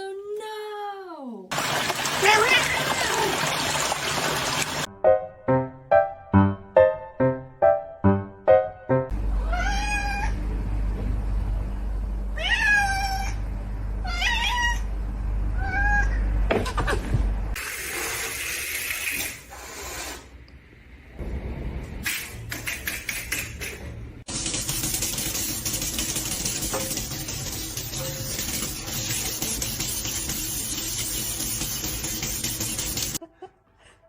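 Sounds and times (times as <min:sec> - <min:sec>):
cat meowing: 0:09.4 - 0:10.4, 0:12.4 - 0:13.4.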